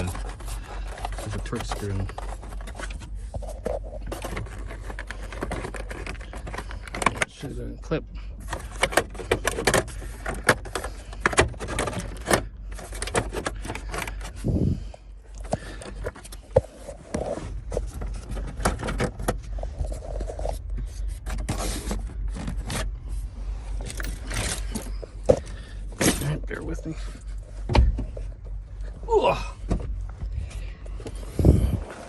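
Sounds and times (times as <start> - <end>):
steady low rumble: 0.0 - 32.0
tools clicking and scraping: 23.7 - 26.4.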